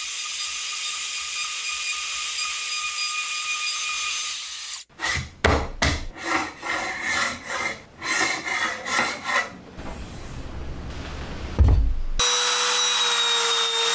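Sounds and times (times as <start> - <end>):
scraping and rubbing on wood: 5.0 - 10.2
low rumble: 10.4 - 12.2
thump: 11.6 - 12.2.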